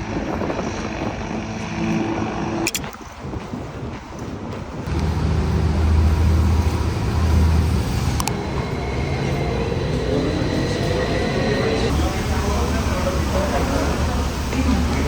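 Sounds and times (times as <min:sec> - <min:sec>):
sharp click: 0:02.7 - 0:03.0
vehicle drone: 0:04.8 - 0:15.0.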